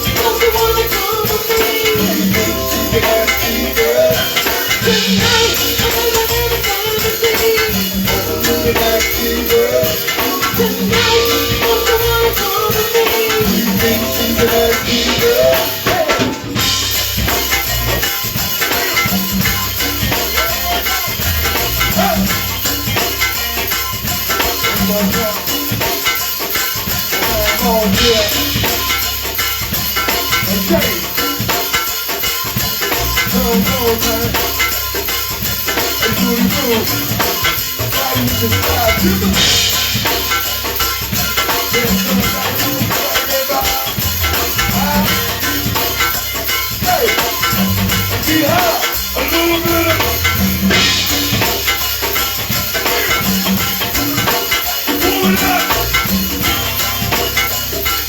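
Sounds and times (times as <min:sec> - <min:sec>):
live band playing: 0:00.0 - 0:58.0
shaker percussion: 0:00.0 - 0:58.0
cymbal crash: 0:50.0 - 0:58.0.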